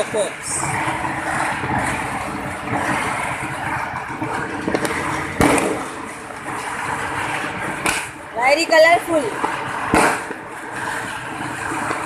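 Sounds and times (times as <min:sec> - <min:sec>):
steady rushing background noise: 0:00.0 - 0:12.0
firecracker snap: 0:04.3 - 0:08.3, 0:09.3 - 0:12.0.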